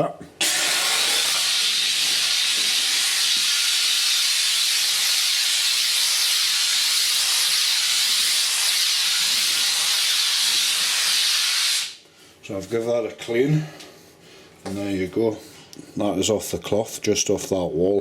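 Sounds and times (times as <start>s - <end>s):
steam cleaner hissing: 0.4s - 12.0s.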